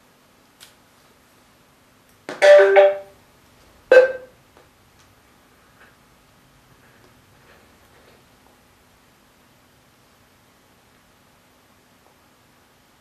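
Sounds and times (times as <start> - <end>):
short electronic tone: 2.4 - 3.1
two-note falling chime: 2.4 - 3.1.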